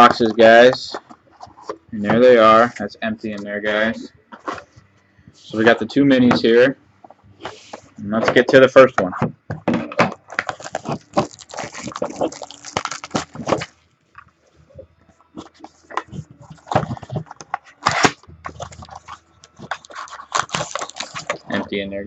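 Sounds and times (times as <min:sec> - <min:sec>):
plastic wrapping crinkling: 0:10.2 - 0:14.4, 0:15.4 - 0:21.7.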